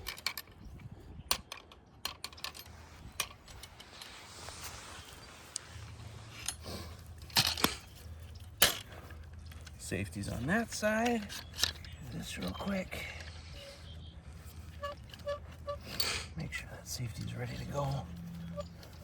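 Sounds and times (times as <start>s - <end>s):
metal clicks and clinks: 1.3s - 4.2s, 6.4s - 13.7s.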